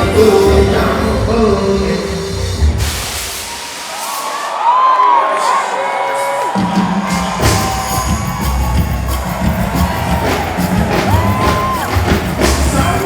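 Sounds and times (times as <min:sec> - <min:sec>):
live concert music: 0:00.0 - 0:13.0
crowd cheering: 0:02.7 - 0:13.0
heavy bass beat: 0:06.6 - 0:13.0.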